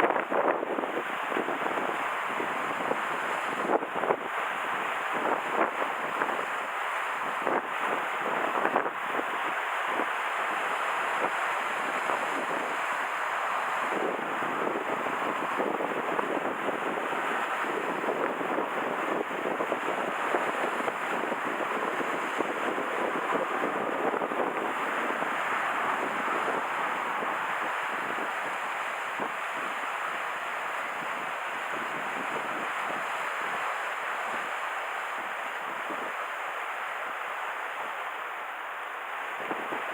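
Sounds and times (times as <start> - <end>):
strong wind: 0.0 - 39.9
waves washing on shore: 0.0 - 39.9.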